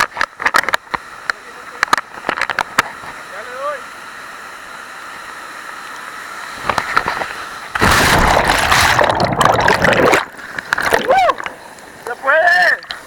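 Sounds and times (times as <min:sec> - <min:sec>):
rushing water splashing: 0:05.4 - 0:13.0.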